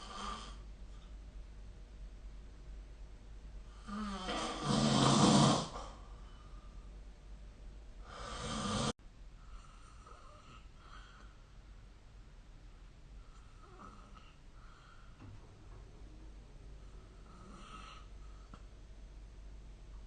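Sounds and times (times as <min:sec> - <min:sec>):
person snoring: 0:03.7 - 0:06.0, 0:08.0 - 0:08.9, 0:17.2 - 0:18.1.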